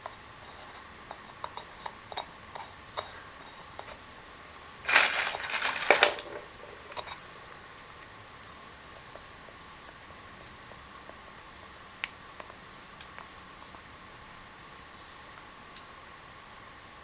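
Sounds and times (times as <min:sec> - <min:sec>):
loud rustling and crinkling: 0:04.8 - 0:07.3
parts and tools clicking: 0:04.9 - 0:07.2.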